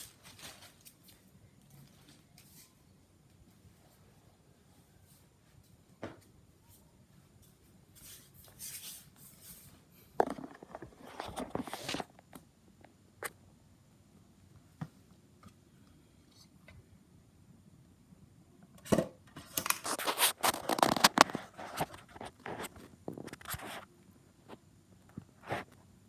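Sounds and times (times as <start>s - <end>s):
packaging rustling: 19.5s - 22.0s.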